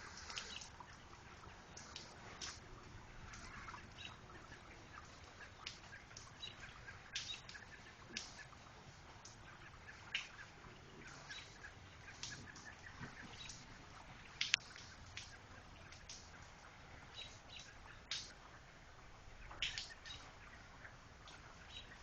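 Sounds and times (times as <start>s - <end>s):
water dripping: 0.0s - 22.0s
faint chirps: 9.2s - 18.3s.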